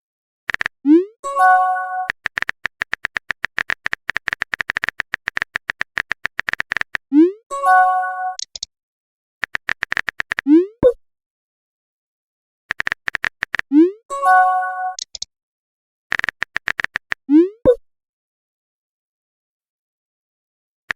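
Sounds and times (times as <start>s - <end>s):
typing clicks: 0.5s - 0.8s, 2.0s - 7.0s, 8.4s - 8.7s, 9.4s - 10.4s, 12.7s - 13.7s, 15.0s - 15.3s, 16.1s - 17.2s.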